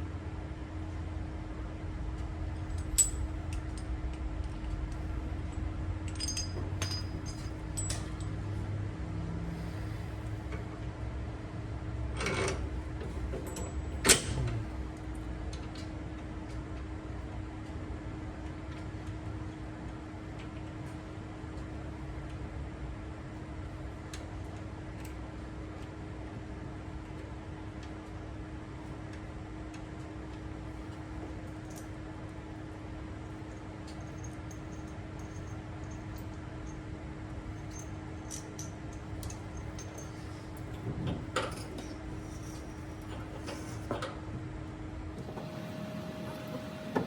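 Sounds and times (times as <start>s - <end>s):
steady background hum: 0.0s - 47.0s
metal tools clinking and rattling: 2.6s - 3.8s, 6.1s - 8.5s, 12.2s - 14.6s, 33.9s - 36.8s, 37.6s - 44.2s.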